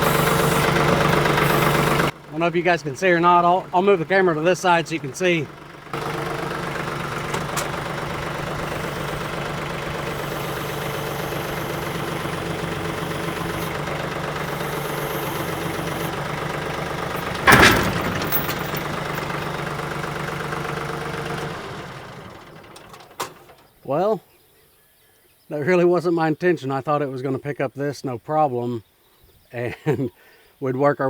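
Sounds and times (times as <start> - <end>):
tractor diesel engine straining: 0.0 - 24.0.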